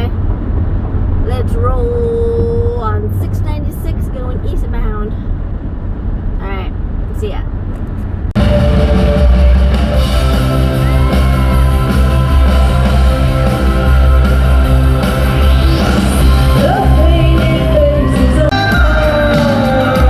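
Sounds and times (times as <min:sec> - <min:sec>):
live pop band playing: 0:08.4 - 0:20.0
person singing: 0:15.2 - 0:20.0.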